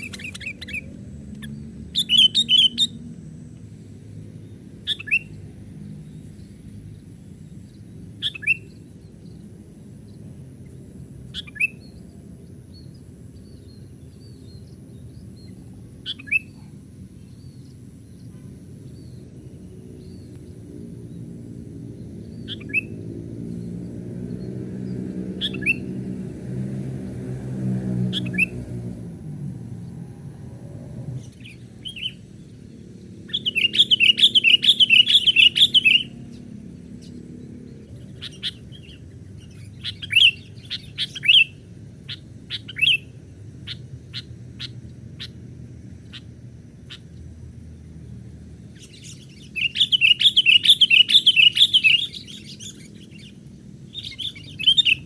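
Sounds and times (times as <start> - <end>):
bird harsh chatter: 0.0 - 3.0, 37.9 - 43.0
bird chirps: 0.0 - 3.4, 4.4 - 21.3, 21.9 - 26.2, 28.0 - 28.6, 31.2 - 47.4, 48.6 - 55.0.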